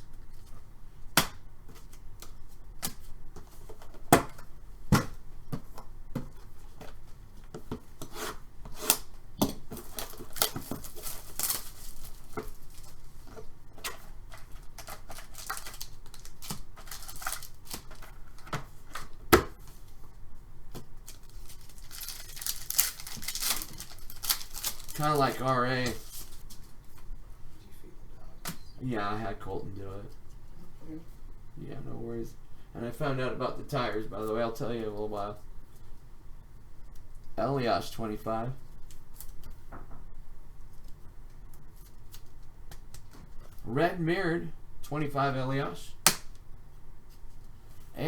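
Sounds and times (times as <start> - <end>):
cards clicking and tapping: 8.8 - 19.6
pack wrappers rustling and tearing: 9.8 - 13.2, 14.2 - 18.5, 21.0 - 26.7.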